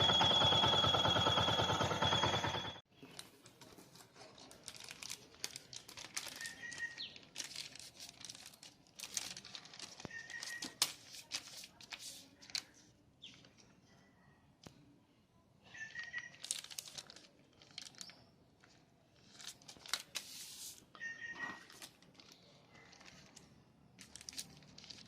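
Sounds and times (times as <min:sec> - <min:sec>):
rustling and crinkling: 0:02.9 - 0:13.9, 0:16.0 - 0:25.0.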